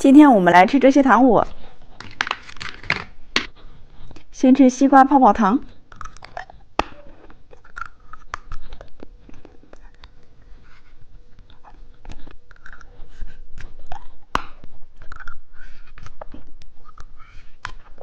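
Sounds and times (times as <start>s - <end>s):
chewing gum mouth clicks: 5.9s - 10.1s, 12.0s - 13.0s, 13.6s - 17.9s.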